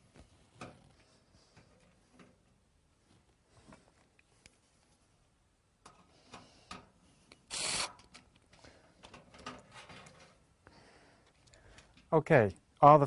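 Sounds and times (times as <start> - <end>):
screwdriver clicking and scraping: 7.4 - 8.2
screw rasping into metal: 7.5 - 8.0.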